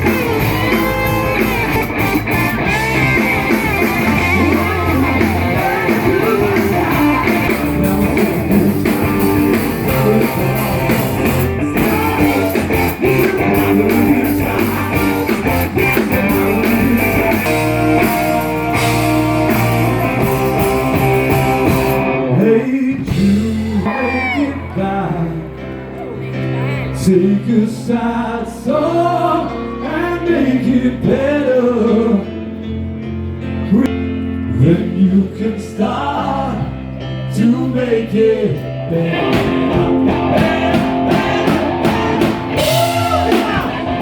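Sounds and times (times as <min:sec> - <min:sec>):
live rock band playing: 0:00.0 - 0:27.4, 0:38.5 - 0:44.0
electric guitar: 0:00.0 - 0:28.3, 0:35.8 - 0:44.0.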